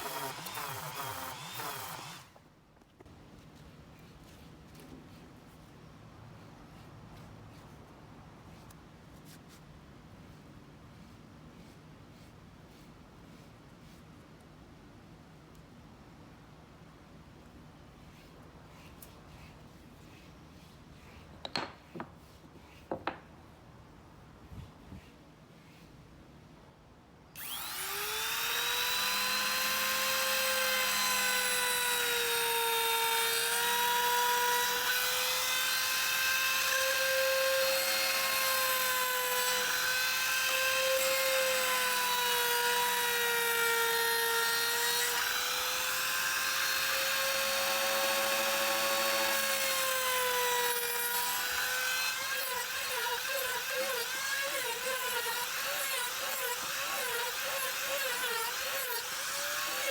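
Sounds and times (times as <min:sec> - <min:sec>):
power tool motor whining: 0:27.4 - 0:59.9.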